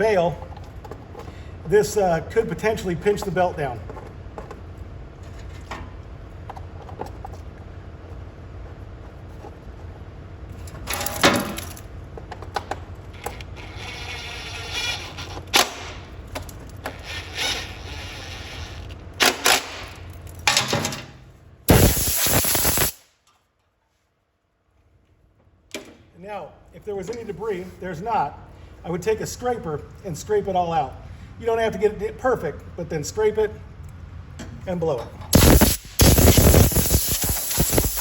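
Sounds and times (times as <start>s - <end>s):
shop hum: 0.0s - 38.0s
loud hissing burst: 21.7s - 23.1s, 35.3s - 38.0s.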